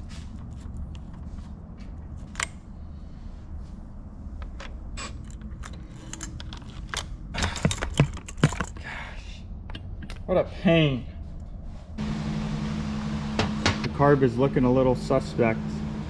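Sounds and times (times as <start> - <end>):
metal parts and tools clicking: 4.4 - 8.8.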